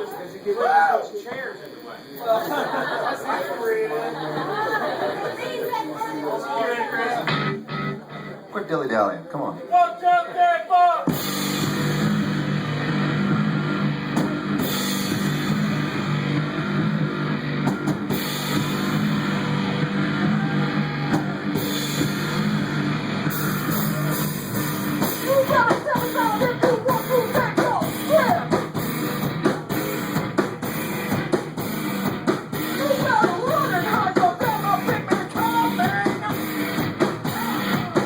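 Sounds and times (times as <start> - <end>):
bass guitar: 7.2 - 8.5, 11.1 - 38.0
distorted electric guitars: 7.2 - 8.5, 11.1 - 38.0
drum kit: 7.3 - 8.3, 11.1 - 38.0.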